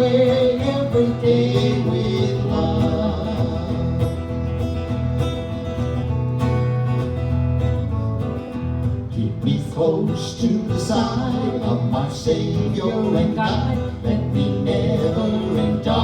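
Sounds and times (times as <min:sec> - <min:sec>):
voices singing: 0:00.0 - 0:05.9, 0:09.1 - 0:16.0
acoustic guitar playing: 0:00.0 - 0:16.0.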